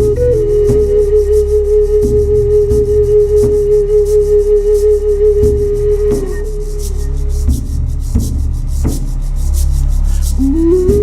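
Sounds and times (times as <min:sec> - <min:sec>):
held wavering tone: 0:00.0 - 0:08.1
low hum: 0:00.0 - 0:11.0
rhythmic scraping strokes: 0:00.0 - 0:11.0.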